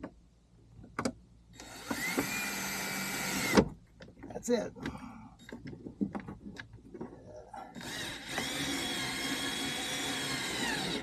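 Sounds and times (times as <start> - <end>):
small electric drill running: 1.6 - 3.6, 7.8 - 11.0
handling clicks and knocks: 3.9 - 7.2.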